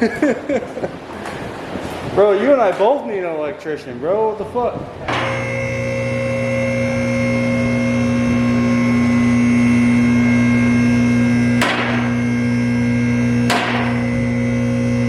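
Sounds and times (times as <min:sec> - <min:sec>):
hydraulic pump motor humming: 0:04.9 - 0:15.0.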